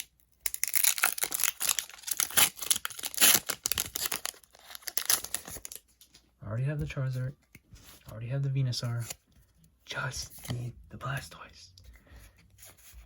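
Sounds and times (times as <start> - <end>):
foil wrapper crinkling and tearing: 0.0 - 5.8.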